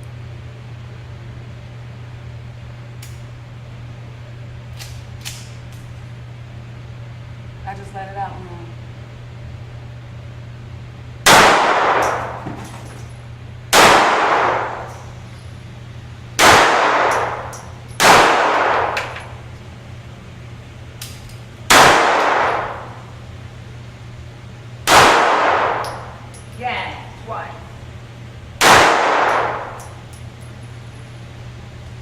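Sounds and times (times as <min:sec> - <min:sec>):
steady low hum: 0:00.0 - 0:32.0
gunshots with ringing echo: 0:11.3 - 0:12.4, 0:13.7 - 0:14.9, 0:16.4 - 0:19.0, 0:21.7 - 0:23.0, 0:24.9 - 0:26.2, 0:28.6 - 0:29.8.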